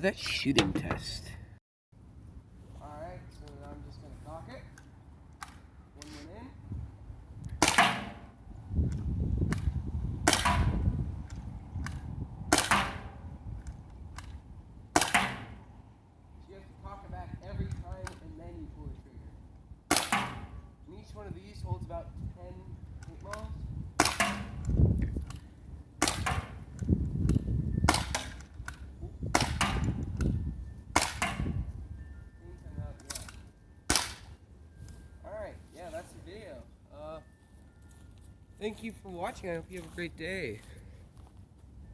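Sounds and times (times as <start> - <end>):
pump cocking clicks: 0.4 - 1.2
paintball gun shots: 7.6 - 8.2, 12.5 - 13.2, 15.0 - 15.6, 19.9 - 20.6, 23.4 - 24.6, 26.0 - 26.6.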